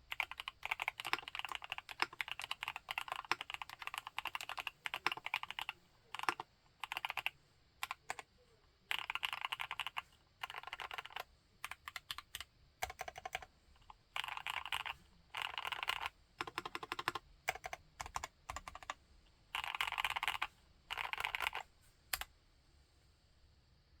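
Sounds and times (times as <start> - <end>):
typing on mechanical keyboard: 0.1 - 8.3, 8.9 - 19.0, 19.6 - 22.3.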